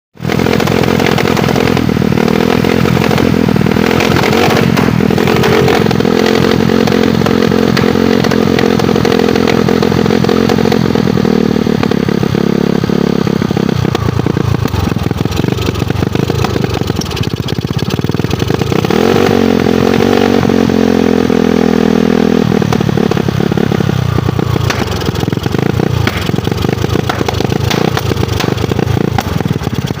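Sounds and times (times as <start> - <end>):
loud motorcycle engine revving: 0.2 - 30.0.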